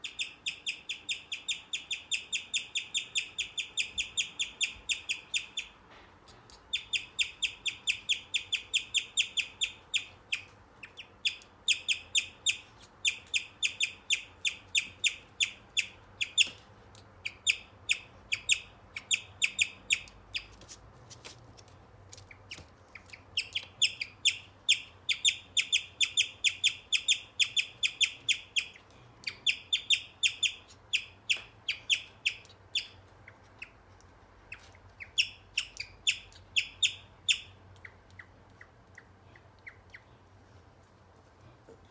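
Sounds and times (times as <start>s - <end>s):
guinea pig chirping: 0.0s - 5.8s, 6.4s - 20.6s, 22.2s - 40.3s.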